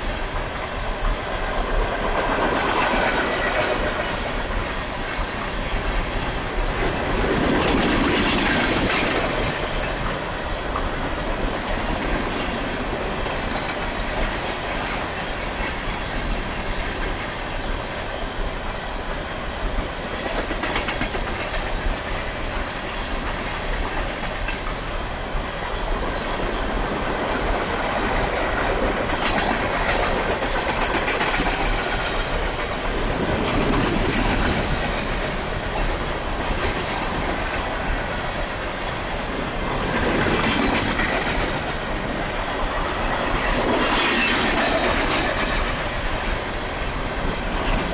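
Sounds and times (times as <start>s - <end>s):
railcars rumbling: 0.0s - 47.9s
wheels clacking over rail joints: 6.8s - 15.9s, 20.2s - 24.8s, 25.9s - 46.4s.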